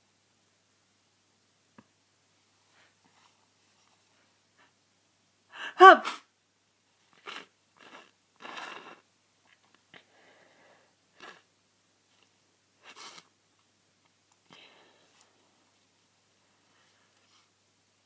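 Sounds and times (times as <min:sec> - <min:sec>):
soft breathy breathing: 0:10.0 - 0:11.0, 0:14.4 - 0:15.8.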